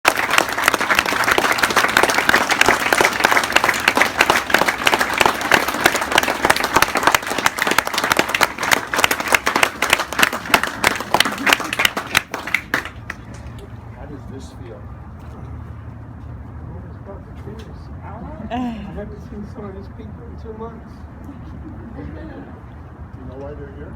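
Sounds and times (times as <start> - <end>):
crowd applauding: 0.0 - 13.4.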